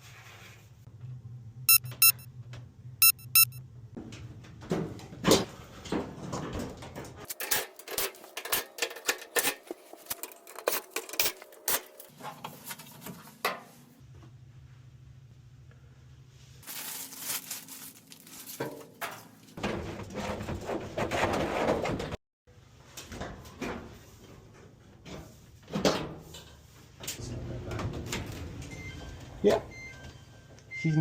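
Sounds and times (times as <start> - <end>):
rustling and scraping: 5.5 - 13.9, 16.6 - 22.0.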